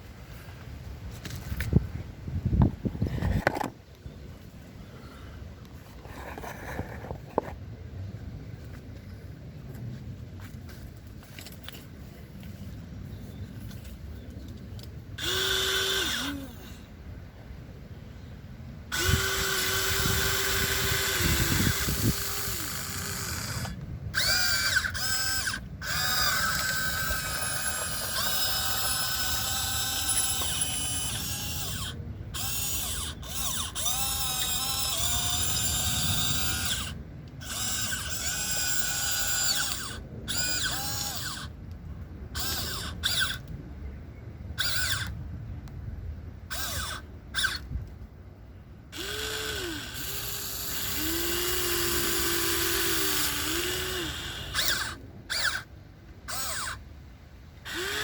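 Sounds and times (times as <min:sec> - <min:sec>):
model excavator motors whining: 0:13.6 - 0:16.8, 0:18.9 - 0:41.6, 0:42.3 - 0:43.6, 0:44.6 - 0:45.2, 0:46.5 - 0:47.9, 0:48.9 - 0:56.9, 0:57.6 - 0:58.0.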